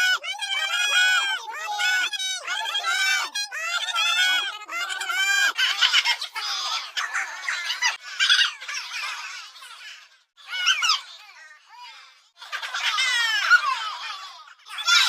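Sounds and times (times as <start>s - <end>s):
high-pitched cartoon voices calling: 0.0s - 15.0s.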